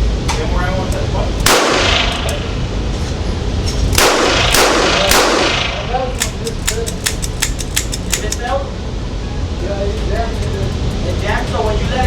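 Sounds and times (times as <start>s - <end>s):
revolver shots echoing indoors: 1.4s - 2.8s, 3.8s - 8.3s.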